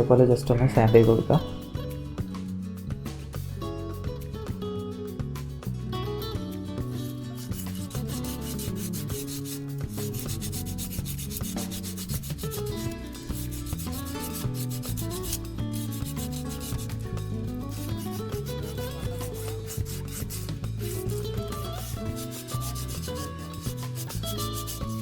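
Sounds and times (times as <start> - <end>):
guitar music: 0.0 - 25.0
sandpaper rubbing: 7.0 - 25.0.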